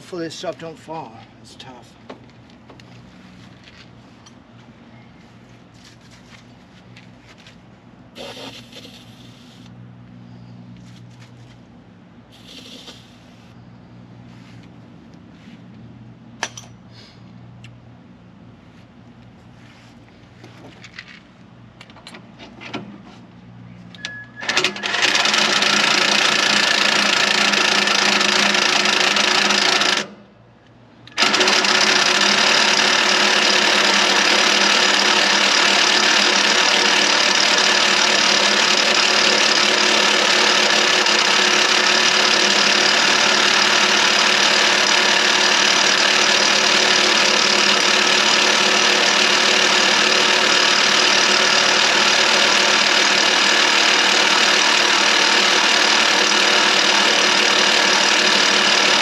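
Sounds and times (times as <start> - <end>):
electric drill boring steel: 24.8 - 30.0, 31.2 - 59.0
drill clicks: 31.0 - 59.0.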